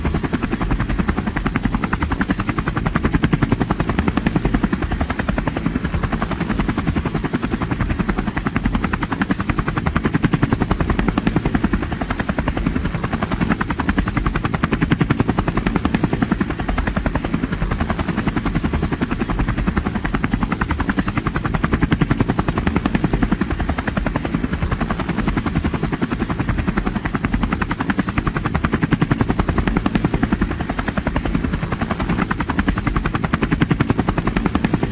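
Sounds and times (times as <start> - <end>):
helicopter engine noise: 0.0 - 34.9
helicopter rotor blades beating: 0.0 - 34.9.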